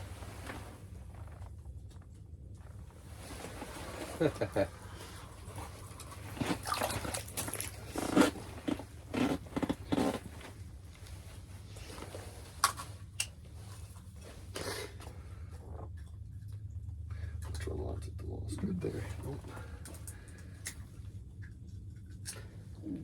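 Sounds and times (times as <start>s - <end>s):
water splashing: 4.2s - 8.8s.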